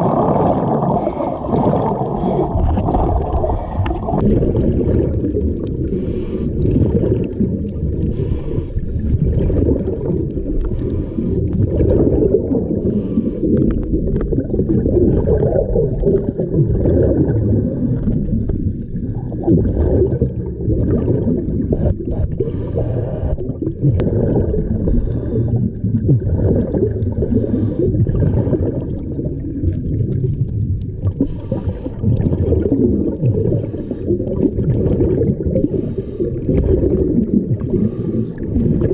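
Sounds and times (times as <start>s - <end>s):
exhaled bubbles underwater: 0.0s - 38.9s
hissing breaths through regulator: 5.8s - 6.6s, 8.0s - 9.1s, 10.6s - 11.6s, 12.8s - 13.6s, 17.4s - 18.1s, 21.7s - 23.5s, 24.9s - 25.6s, 27.3s - 27.9s, 31.2s - 32.0s, 33.5s - 34.2s, 35.6s - 36.4s, 37.7s - 38.4s.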